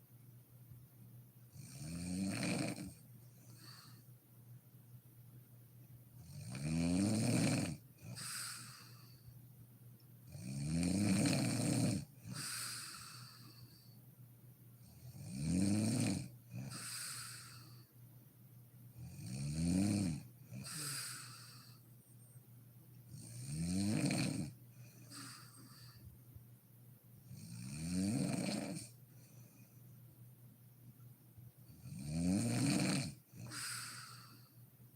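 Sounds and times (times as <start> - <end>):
woman snoring: 1.6 - 4.0, 6.3 - 9.2, 10.3 - 13.8, 14.9 - 17.9, 19.0 - 21.8, 23.1 - 26.0, 27.3 - 29.0, 31.8 - 34.5
soft breath out: 24.8 - 26.2, 33.4 - 34.7.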